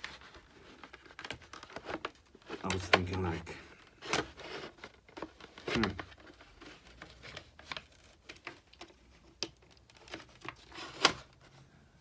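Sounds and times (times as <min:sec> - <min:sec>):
plastic parts clicking and scraping: 0:00.0 - 0:11.6.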